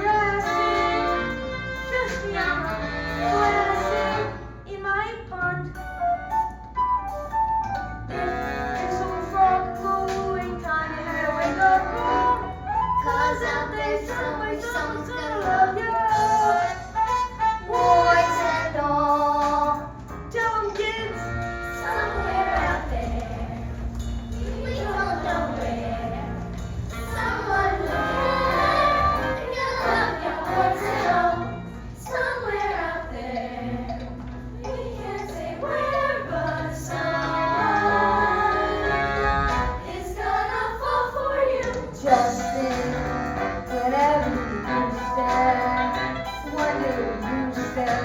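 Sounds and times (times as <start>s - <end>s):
instrumental accompaniment: 0.0s - 48.0s
voices singing a show tune: 13.0s - 16.9s, 24.4s - 48.0s.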